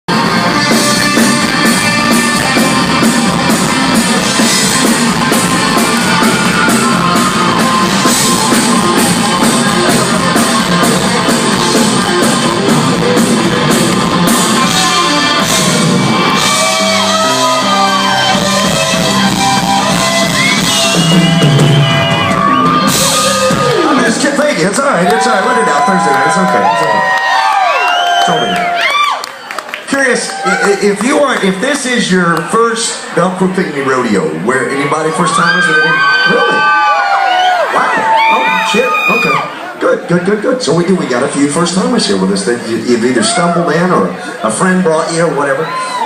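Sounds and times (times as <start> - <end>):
live rock band playing: 0.1 - 27.0.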